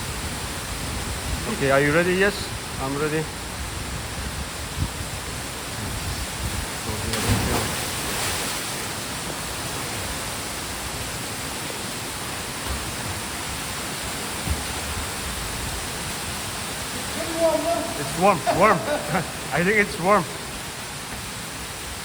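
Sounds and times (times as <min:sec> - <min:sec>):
waterfall rushing: 0:00.0 - 0:22.0
person splashing into water: 0:07.0 - 0:08.8.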